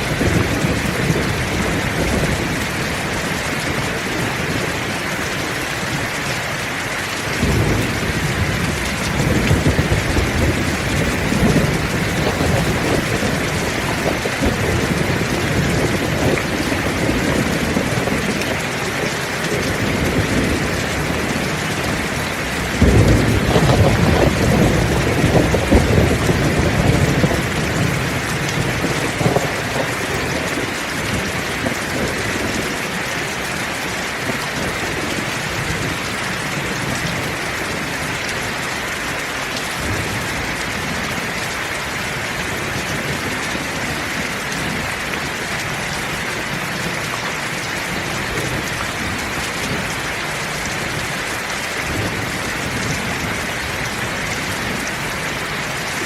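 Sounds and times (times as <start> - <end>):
thunder rumbling: 0.0 - 38.2
heavy rain: 0.0 - 56.0.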